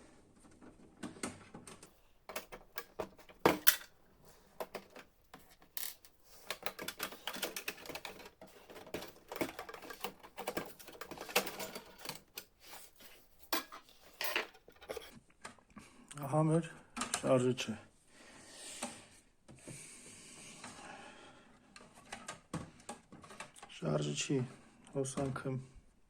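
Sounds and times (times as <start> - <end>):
clicks and taps of printer parts: 1.7 - 3.9, 4.6 - 15.1.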